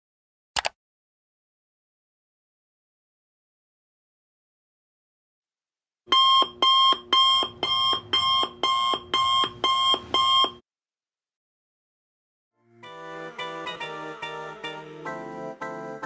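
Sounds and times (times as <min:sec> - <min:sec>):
two-tone alarm beeps: 0:06.1 - 0:10.6.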